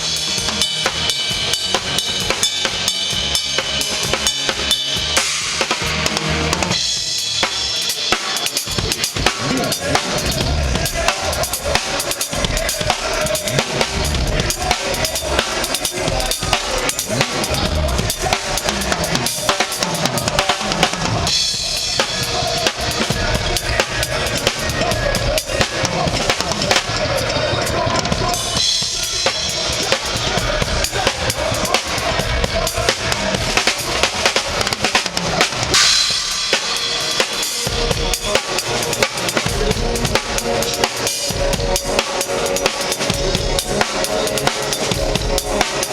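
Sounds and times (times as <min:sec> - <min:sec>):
drum kit playing: 0:00.0 - 0:45.9
cymbals washing: 0:28.6 - 0:45.9.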